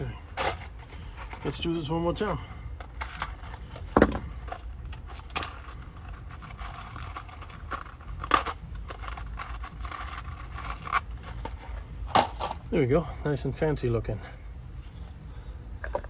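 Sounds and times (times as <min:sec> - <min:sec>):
metal clanks and rattles: 0:00.0 - 0:12.8.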